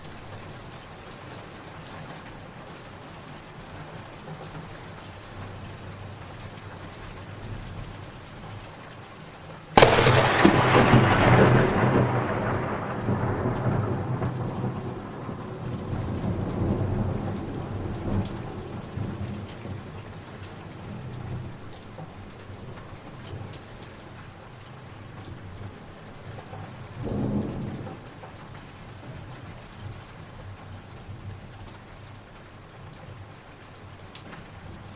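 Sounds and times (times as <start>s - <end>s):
steady rain: 0.0s - 34.9s
thunder rumbling: 9.8s - 19.2s.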